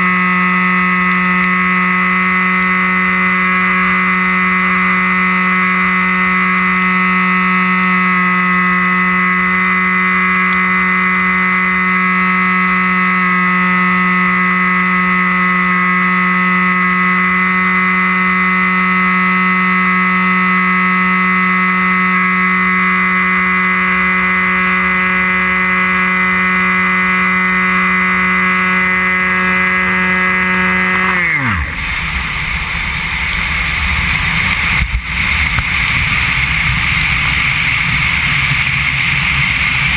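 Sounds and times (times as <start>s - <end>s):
electric motor high-pitched whine: 0.0s - 39.9s
rushing wind: 31.5s - 39.9s.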